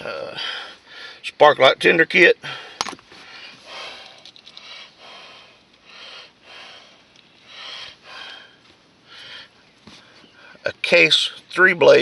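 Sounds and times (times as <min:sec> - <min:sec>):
man breathing and sniffing: 0:00.0 - 0:01.3, 0:02.4 - 0:10.7.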